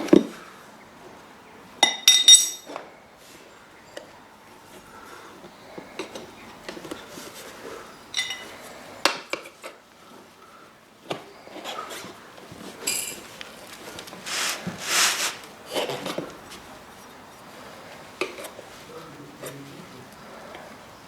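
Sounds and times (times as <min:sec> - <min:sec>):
metal tools clinking on rim: 0:01.8 - 0:02.8, 0:08.1 - 0:08.5, 0:12.8 - 0:13.3
tyre rubber scraping over rim: 0:13.6 - 0:16.7.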